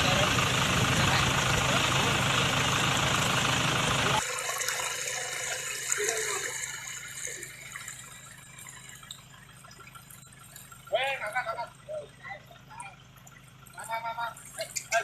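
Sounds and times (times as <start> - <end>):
flood water rushing in a canal: 0.0 - 11.3.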